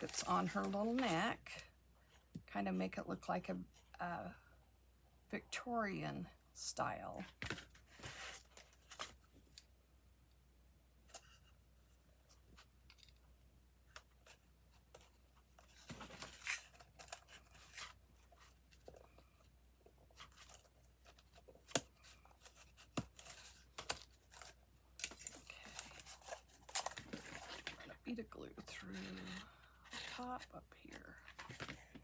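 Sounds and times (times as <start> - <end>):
rustling and scraping: 0.0 - 1.5, 7.3 - 9.6, 13.9 - 32.0.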